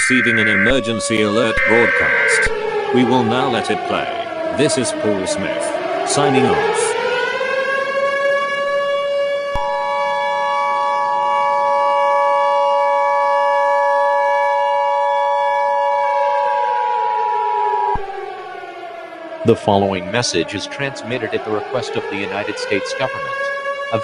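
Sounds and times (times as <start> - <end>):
two-tone attention signal: 0.0 - 2.6
siren: 0.0 - 24.0.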